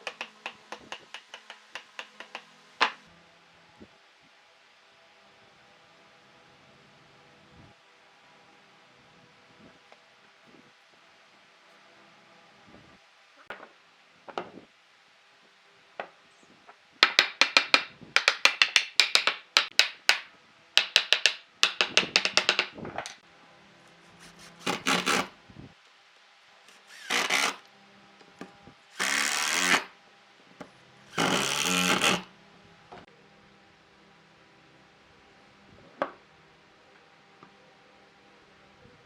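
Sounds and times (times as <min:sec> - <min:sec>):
rapid sharp taps on wood: 0:00.0 - 0:03.0, 0:17.0 - 0:23.2
tool scraping wood: 0:00.0 - 0:03.0, 0:23.9 - 0:25.4, 0:26.7 - 0:27.6, 0:29.0 - 0:29.9, 0:31.1 - 0:32.3.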